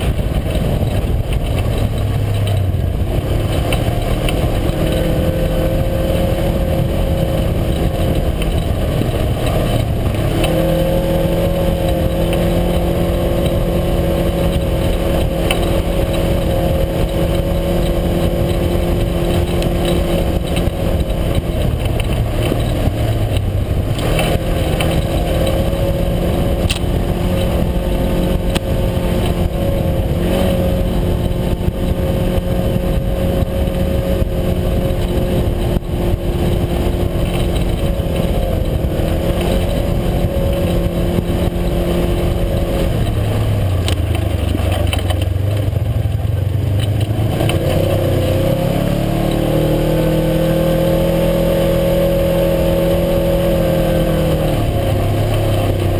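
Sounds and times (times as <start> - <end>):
vehicle engine running: 0.0 - 55.9.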